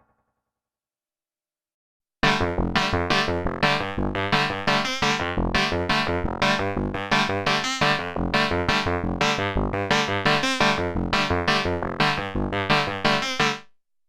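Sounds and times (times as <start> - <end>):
low synth bass line: 2.2 - 13.1.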